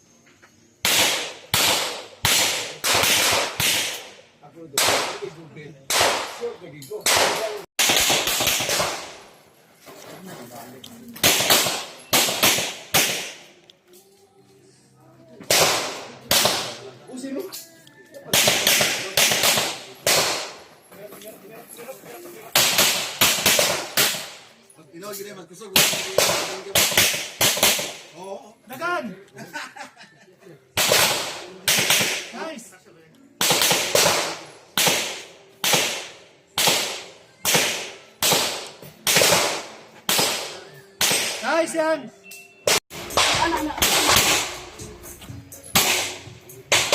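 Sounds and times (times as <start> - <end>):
gunshots with echo: 0.8 - 4.2, 4.8 - 9.3, 11.2 - 13.5, 15.4 - 16.9, 18.3 - 20.7, 22.5 - 24.4, 25.8 - 28.1, 30.8 - 32.3, 33.4 - 41.4, 42.7 - 44.8, 45.8 - 46.9.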